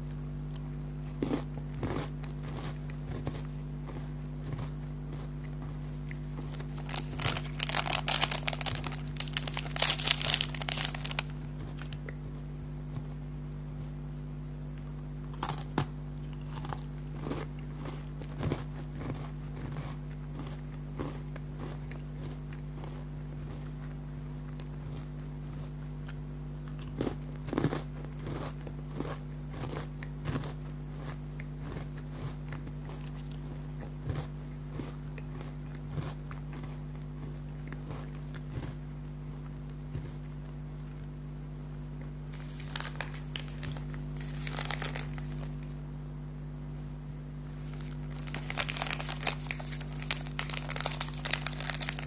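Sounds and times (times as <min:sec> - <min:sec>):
crunchy biscuits being chewed: 0:00.0 - 0:14.1, 0:14.7 - 0:41.2, 0:41.8 - 0:45.8, 0:47.3 - 0:52.0
packaging crinkling: 0:06.3 - 0:12.0, 0:42.4 - 0:45.6, 0:47.6 - 0:52.0.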